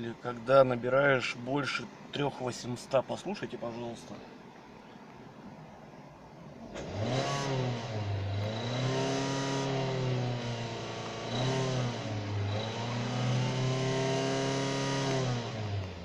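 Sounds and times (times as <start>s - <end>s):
car engine idling and revving: 6.5s - 16.0s.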